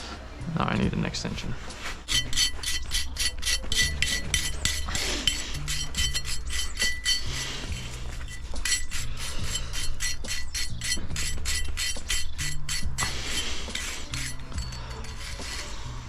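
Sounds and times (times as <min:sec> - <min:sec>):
background music with bass: 0:00.0 - 0:16.0
ratchet wrench clicking: 0:08.3 - 0:15.4.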